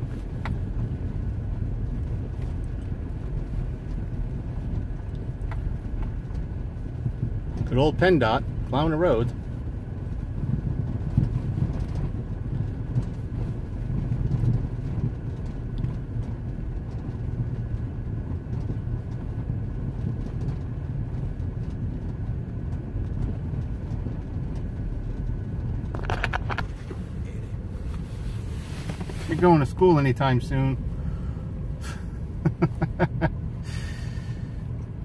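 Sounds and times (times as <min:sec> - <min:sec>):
car engine and tyre rumble: 0:00.0 - 0:35.0
brief clatter: 0:25.8 - 0:27.0.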